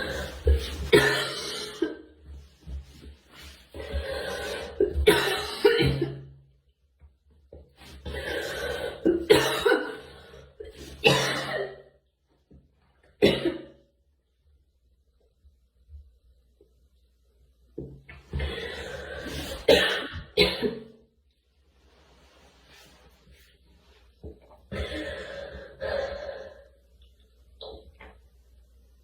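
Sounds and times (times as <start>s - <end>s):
girl coughing: 0.0s - 2.0s, 4.8s - 6.2s, 9.0s - 10.1s, 11.0s - 11.8s, 13.2s - 13.7s, 19.6s - 20.8s.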